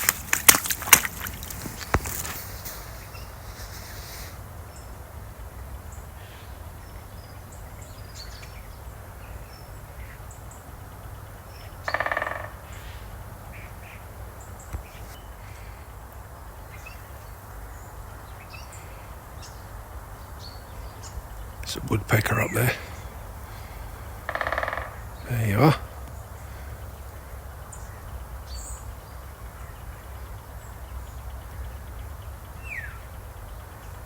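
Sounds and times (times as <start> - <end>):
small birds chirping: 0.0 - 12.0, 12.6 - 34.0
crow cawing: 11.8 - 13.1, 22.6 - 25.2.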